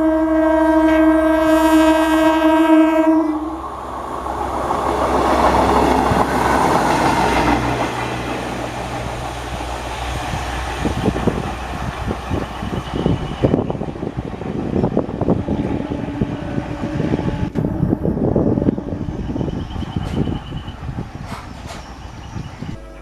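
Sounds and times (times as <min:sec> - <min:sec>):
electric train horn: 0:00.0 - 0:09.0, 0:12.3 - 0:20.8, 0:22.3 - 0:23.0
train rushing past: 0:00.0 - 0:23.0
wheels clattering over rail joints: 0:03.5 - 0:15.1, 0:19.6 - 0:23.0.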